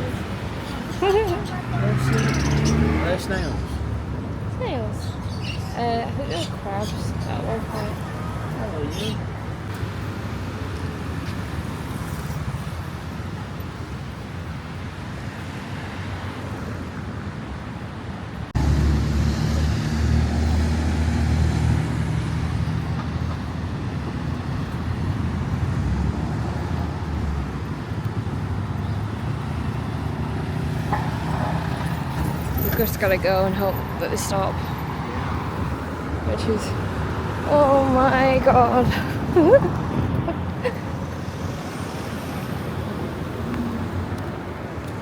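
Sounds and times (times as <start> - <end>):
road traffic hum: 0.0 - 45.0
close engine rumble: 18.5 - 30.5.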